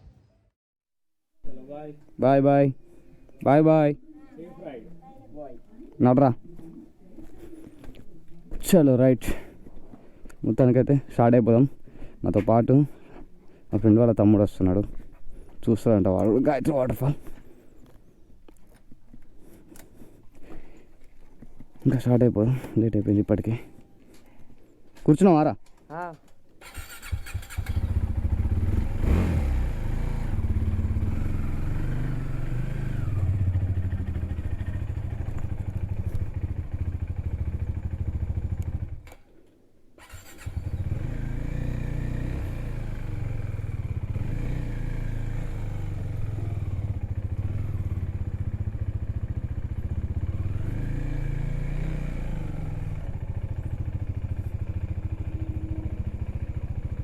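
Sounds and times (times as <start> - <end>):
motorcycle engine running: 26.7 - 39.0, 40.4 - 57.0.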